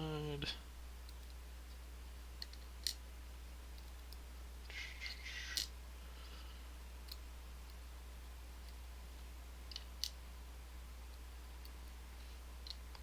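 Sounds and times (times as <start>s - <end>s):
steady low hum: 0.0s - 13.0s
small metal parts clicking on desk: 2.4s - 3.0s, 3.7s - 5.8s, 7.0s - 8.8s, 9.7s - 10.2s, 12.6s - 13.0s.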